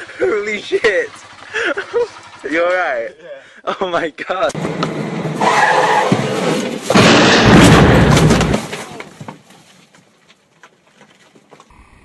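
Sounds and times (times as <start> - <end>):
loud explosion blast: 6.9 - 8.6.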